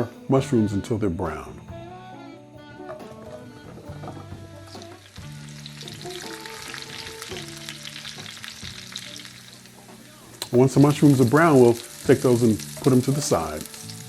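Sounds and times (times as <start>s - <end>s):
light background music: 0.0s - 14.0s
mushrooms sizzling in a pan: 4.1s - 14.0s.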